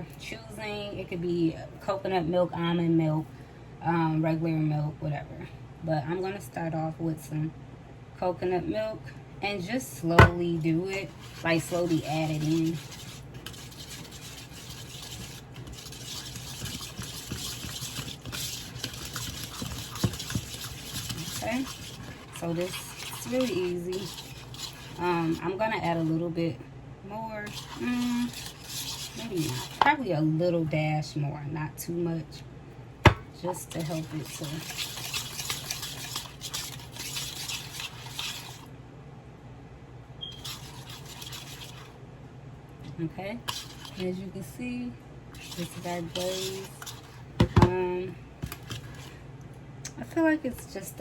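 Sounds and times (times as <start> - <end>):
glaze mixing in a bowl: 8.3 - 30.6, 31.8 - 38.8, 40.2 - 42.0, 42.8 - 49.3.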